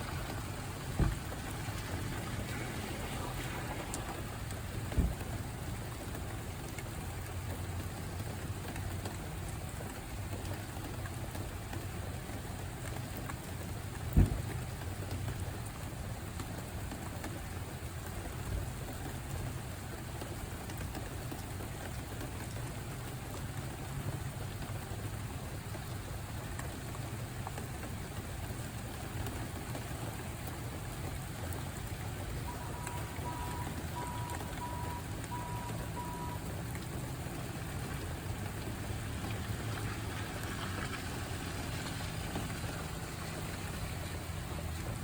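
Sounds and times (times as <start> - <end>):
rain falling: 0.0 - 45.0
sharp thump: 14.2 - 14.4
faint pulsed beeping: 32.5 - 36.5.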